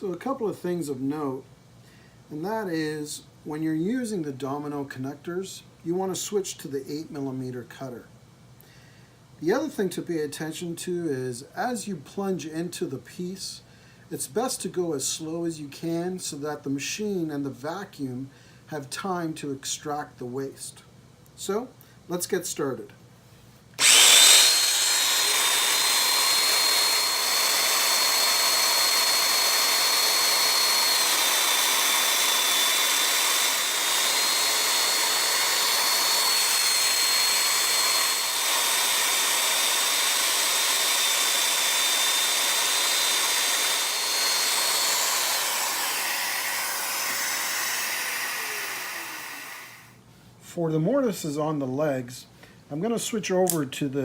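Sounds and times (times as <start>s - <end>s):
power joiner whining: 23.8s - 49.9s.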